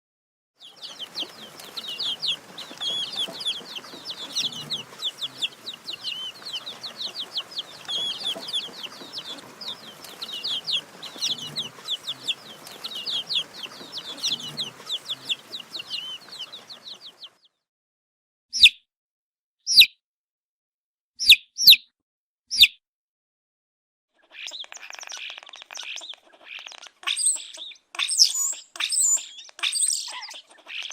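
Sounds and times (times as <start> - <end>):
chicks peeping: 0.6 - 17.5, 24.3 - 30.9
single chick loud peeps: 18.6 - 18.8.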